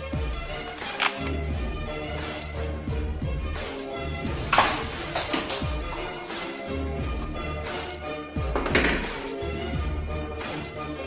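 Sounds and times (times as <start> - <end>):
music with heavy beat: 4.5 - 6.3.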